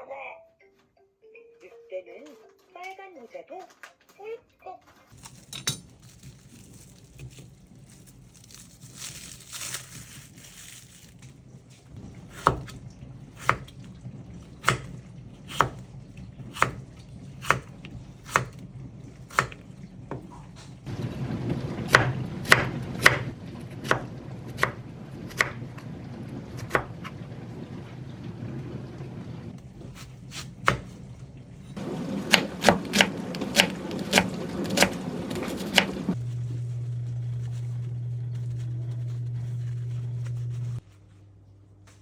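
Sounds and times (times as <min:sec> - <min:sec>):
knife chopping on cutting board: 0:12.2 - 0:12.8, 0:13.4 - 0:13.7, 0:14.6 - 0:15.8, 0:16.4 - 0:16.8, 0:17.4 - 0:18.6, 0:19.3 - 0:20.4, 0:29.8 - 0:31.1, 0:31.9 - 0:36.2
low hum: 0:33.2 - 0:40.9.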